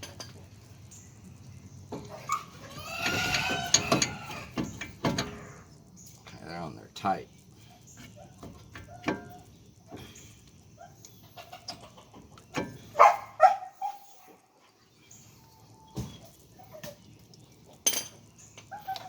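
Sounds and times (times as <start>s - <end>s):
dog barking: 13.0s - 14.2s.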